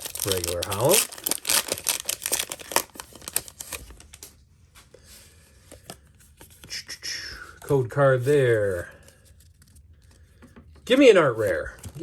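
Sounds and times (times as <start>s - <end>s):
foil wrapper crinkling: 0.0s - 4.3s.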